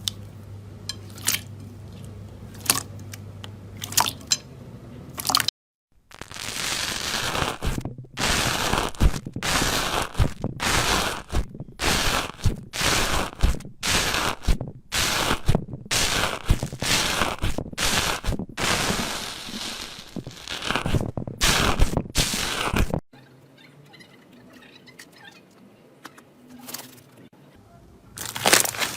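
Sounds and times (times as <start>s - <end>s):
crunchy slime crackling: 6.1s - 23.0s, 28.2s - 28.9s.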